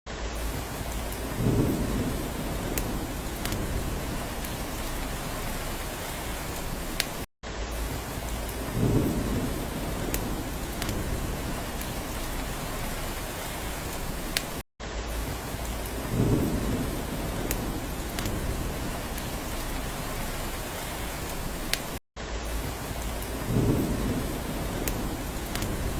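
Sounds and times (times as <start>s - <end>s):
steady rain: 0.1s - 25.9s
low thunder rumble: 0.4s - 6.8s, 7.8s - 14.3s, 15.1s - 21.7s, 22.5s - 25.9s
sharp drip ticks: 2.6s - 5.2s, 24.7s - 25.9s.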